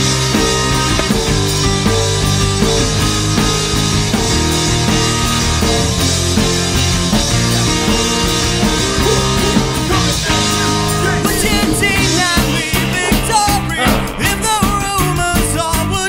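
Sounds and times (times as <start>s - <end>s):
punk rock song playing loudly: 0.0s - 16.0s
person singing: 8.6s - 16.0s.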